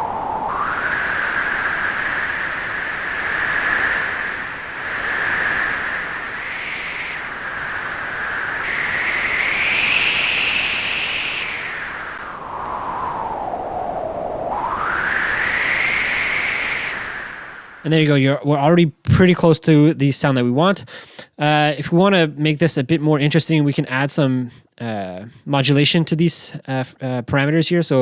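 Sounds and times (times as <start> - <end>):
synthesized wind with resonant pitch: 0.0 - 18.0.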